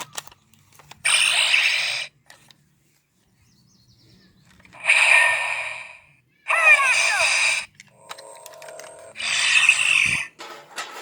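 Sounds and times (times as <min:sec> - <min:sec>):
toy electronic static effects: 0:01.0 - 0:02.1, 0:04.8 - 0:10.4.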